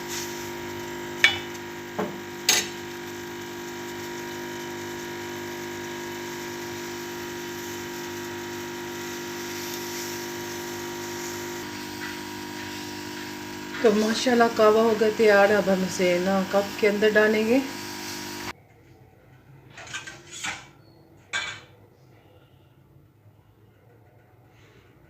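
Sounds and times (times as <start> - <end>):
steady hum: 0.0 - 18.7.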